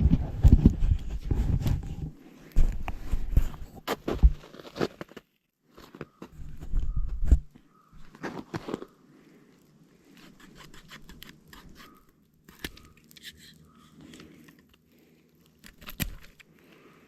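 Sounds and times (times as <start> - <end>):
knife sawing through rope: 10.1 - 13.6.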